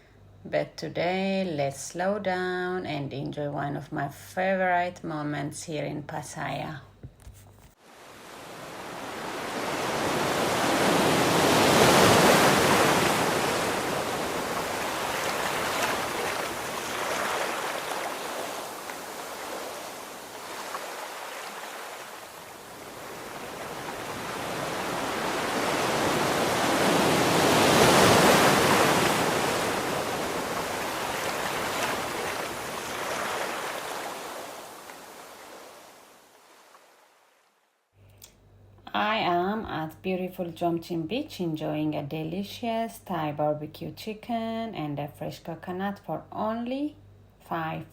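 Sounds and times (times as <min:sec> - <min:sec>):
sea waves breaking on beach: 0:07.8 - 0:37.3.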